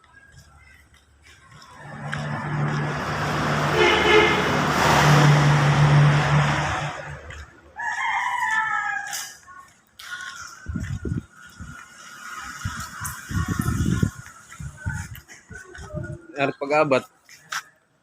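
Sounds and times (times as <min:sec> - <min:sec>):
vehicle engine passing: 0:01.4 - 0:07.8
rooster crowing: 0:07.8 - 0:09.3.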